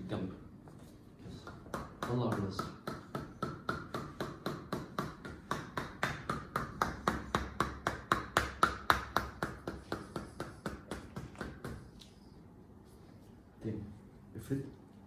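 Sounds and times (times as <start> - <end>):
hammer tapping on body: 1.4 - 12.0.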